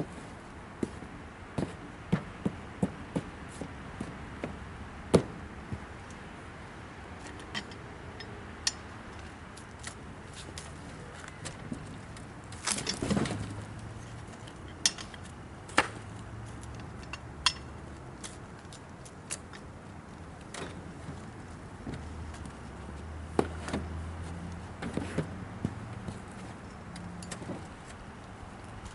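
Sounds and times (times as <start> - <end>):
sharp knocks and metallic clinks: 7.2 - 10.0, 11.3 - 19.7, 25.6 - 27.8.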